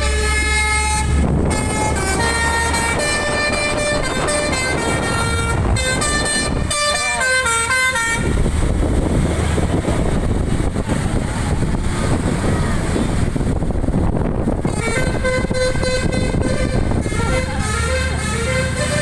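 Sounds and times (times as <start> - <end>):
musical horn melody: 0.0 - 8.5, 14.6 - 19.0
truck engine and road rumble: 0.0 - 19.0.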